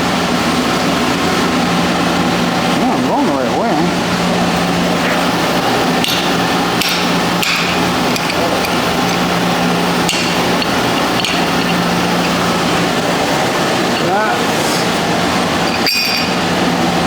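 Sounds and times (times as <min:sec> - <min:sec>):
low machinery hum: 0:00.0 - 0:17.0
metal tools knocking on pipes: 0:05.7 - 0:14.6, 0:15.4 - 0:16.8.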